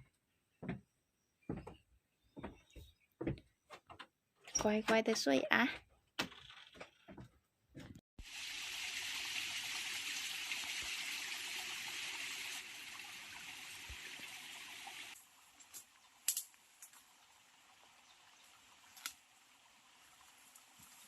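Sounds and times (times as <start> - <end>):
flowing water rushing: 8.2 - 15.2.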